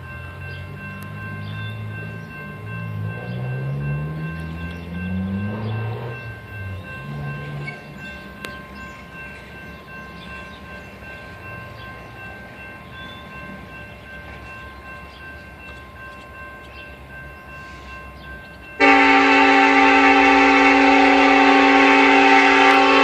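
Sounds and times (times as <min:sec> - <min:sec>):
locomotive air horn chord: 0:18.8 - 0:23.0.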